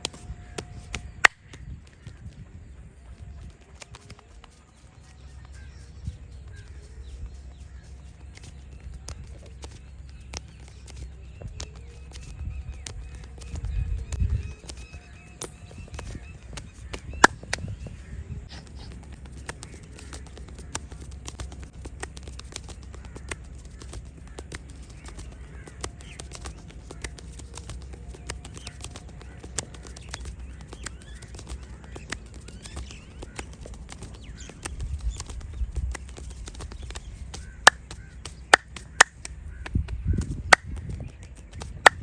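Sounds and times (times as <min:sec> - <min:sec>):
taps and rubbing clicks: 0:18.5 - 0:42.0.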